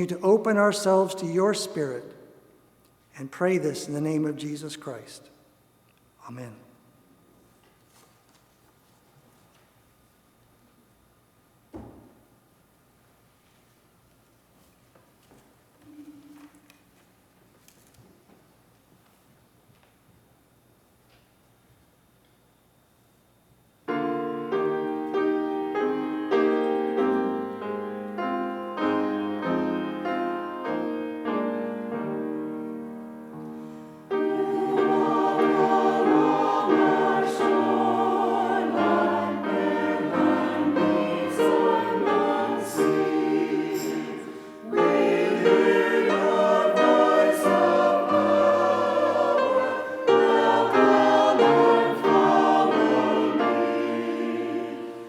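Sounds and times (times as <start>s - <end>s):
choir singing a hymn: 0.0s - 2.0s, 24.0s - 55.0s
piano playing: 23.9s - 55.0s.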